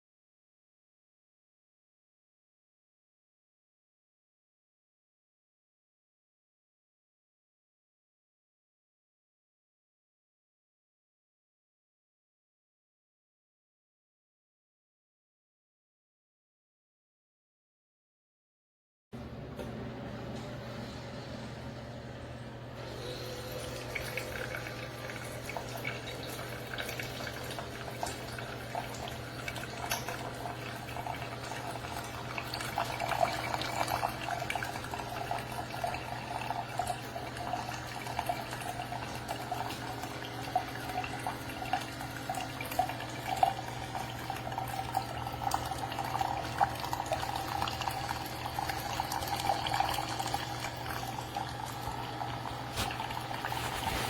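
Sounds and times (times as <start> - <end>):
coffee maker humming: 19.2 - 54.0
coffee streaming into cup: 22.8 - 54.0.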